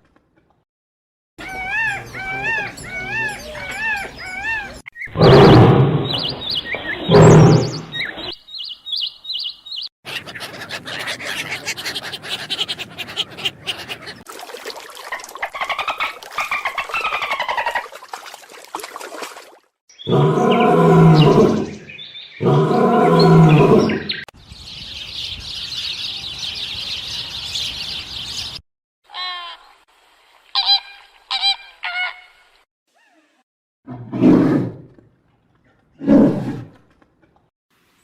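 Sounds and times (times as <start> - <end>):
bird chirping: 1.4 - 14.2, 19.9 - 28.6.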